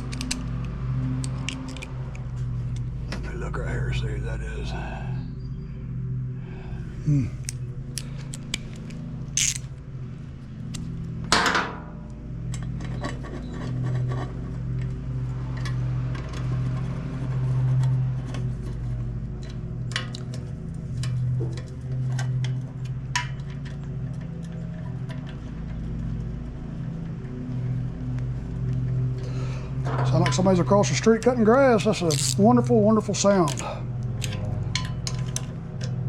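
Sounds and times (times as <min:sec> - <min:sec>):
distant lawn mower engine: 0:07.6 - 0:36.0.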